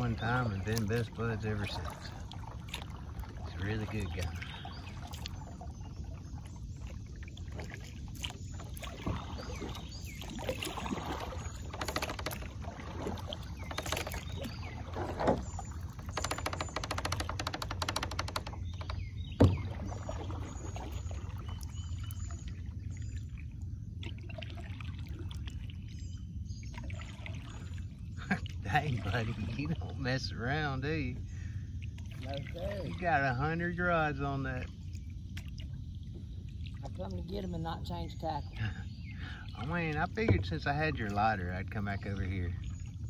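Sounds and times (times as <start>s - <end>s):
paddle splashing water: 0.0s - 43.0s.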